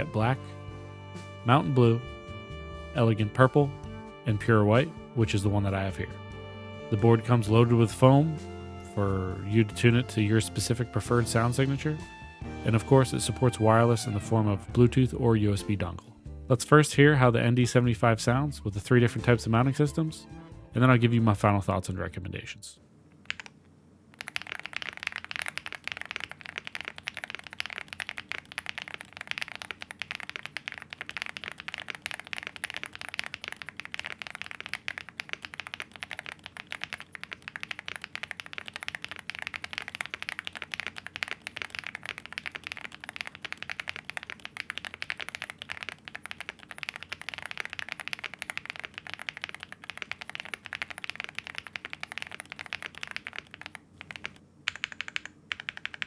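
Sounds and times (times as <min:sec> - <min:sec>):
mechanical keyboard typing: 0:23.2 - 0:23.6, 0:24.2 - 0:56.0.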